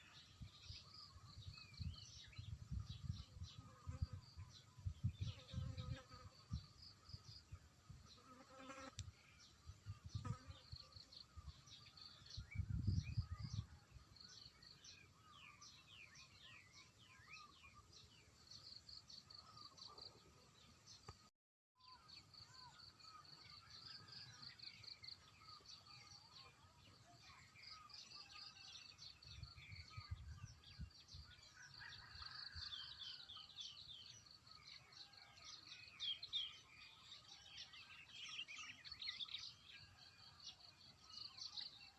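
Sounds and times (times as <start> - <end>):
small birds chirping: 0.0 - 7.5.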